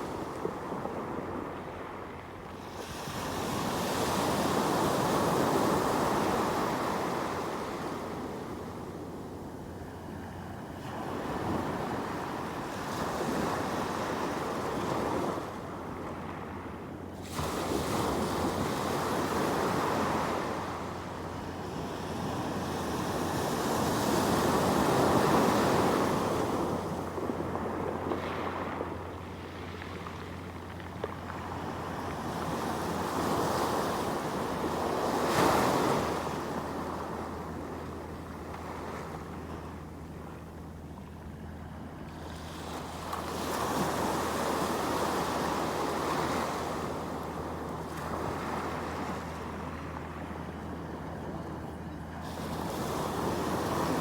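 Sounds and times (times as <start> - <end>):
sea waves breaking ashore: 17.1 - 54.0.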